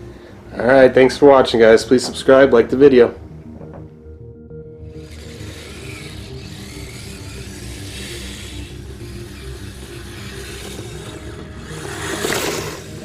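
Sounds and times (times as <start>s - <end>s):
background music: 0.0s - 13.0s
low engine-like drone: 2.6s - 13.0s.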